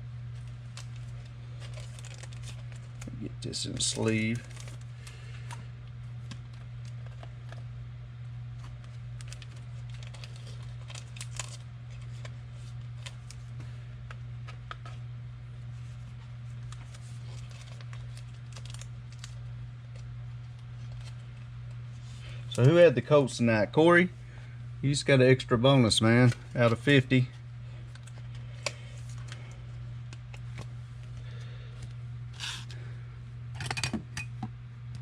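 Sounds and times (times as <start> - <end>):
steady low hum: 0.0 - 35.0
cards sliding into plastic sleeves: 31.8 - 32.8.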